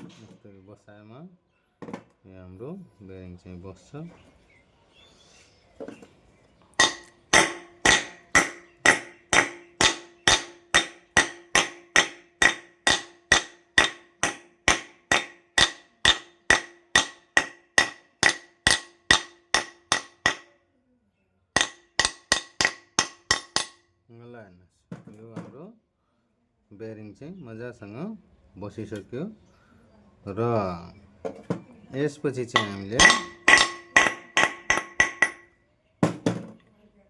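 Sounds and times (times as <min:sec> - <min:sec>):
hammer tapping metal: 0:06.8 - 0:20.5, 0:21.6 - 0:23.8, 0:32.5 - 0:36.5.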